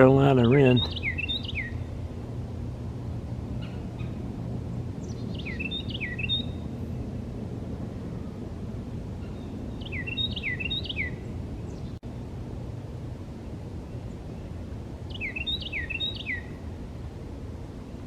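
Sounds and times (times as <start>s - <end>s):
wren singing: 0.0s - 2.0s, 5.0s - 7.1s, 9.2s - 12.0s, 13.9s - 16.6s
low outdoor rumble: 0.0s - 18.0s.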